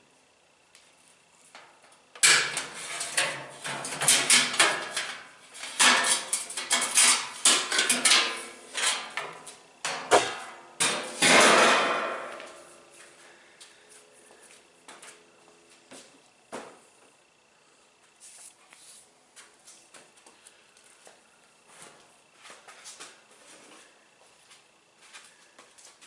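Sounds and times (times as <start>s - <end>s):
metal parts knocking and clanking: 2.2s - 9.2s.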